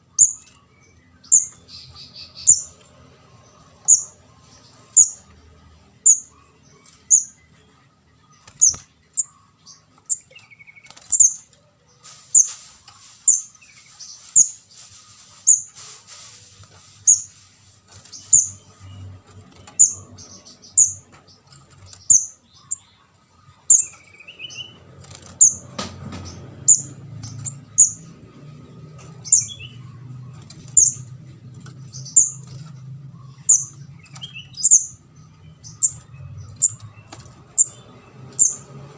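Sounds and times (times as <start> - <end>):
soft bird twittering: 0.0 - 25.6, 26.2 - 38.9
bird chirping sharply: 29.0 - 38.9.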